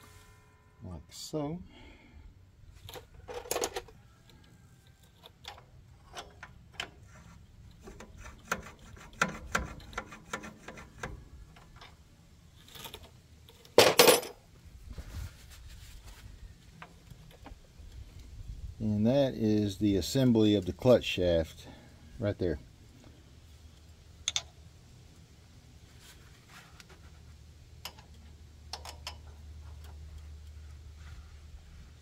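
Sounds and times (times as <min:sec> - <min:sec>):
metal parts clicking and knocking: 0:02.8 - 0:14.4, 0:24.2 - 0:24.6, 0:27.8 - 0:30.2
metal clatter: 0:12.6 - 0:14.4.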